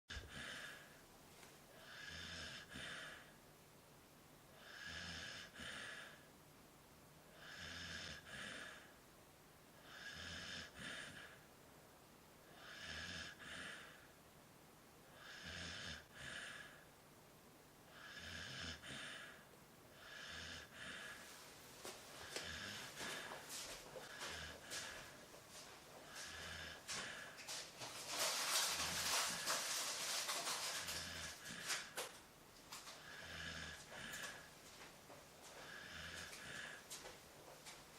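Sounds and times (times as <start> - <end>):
dog breathing noisily: 22.2 - 32.1, 35.6 - 37.1.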